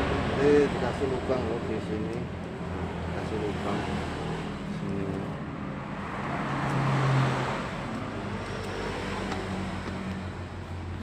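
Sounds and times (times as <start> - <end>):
traffic hum: 0.0 - 11.0
vehicle passing by: 2.6 - 11.0.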